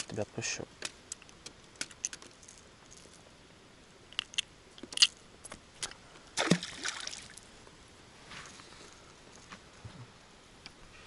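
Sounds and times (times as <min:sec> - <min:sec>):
clicks and knocks of gear: 0:00.8 - 0:03.2
fish splashing into water: 0:06.4 - 0:07.4.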